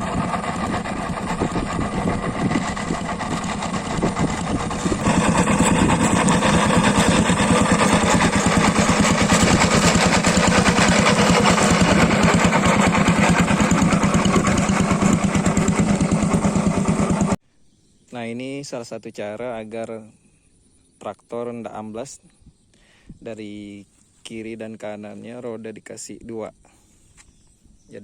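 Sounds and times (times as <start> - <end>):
hand tractor engine running: 0.0 - 17.4.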